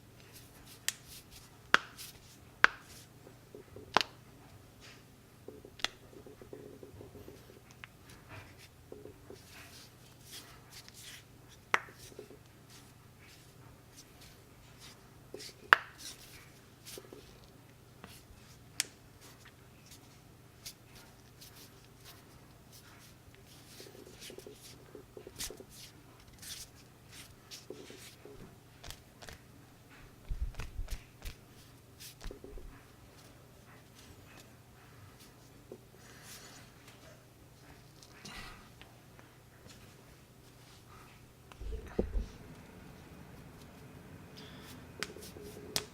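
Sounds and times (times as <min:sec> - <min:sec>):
low thuds: 0:41.6 - 0:42.5
hands rustling: 0:44.4 - 0:45.9
knuckles cracking: 0:44.4 - 0:45.9.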